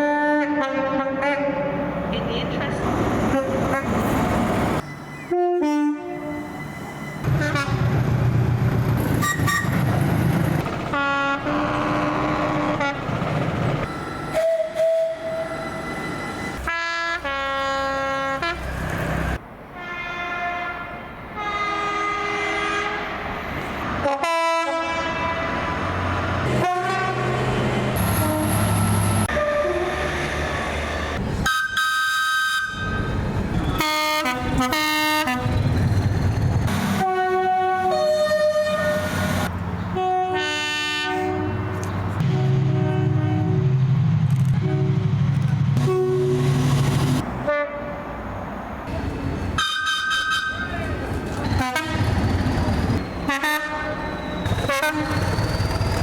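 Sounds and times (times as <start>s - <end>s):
train horns blasting: 0.0s - 1.9s, 3.3s - 4.1s, 5.2s - 6.6s, 7.2s - 8.1s, 10.9s - 13.1s, 13.8s - 18.8s, 19.8s - 23.2s, 24.0s - 25.9s, 26.5s - 30.8s, 31.4s - 35.6s, 36.9s - 39.1s, 40.0s - 43.8s, 44.6s - 45.2s, 45.8s - 48.1s, 49.6s - 50.9s, 51.5s - 55.4s
low rumble of trains: 0.0s - 56.0s.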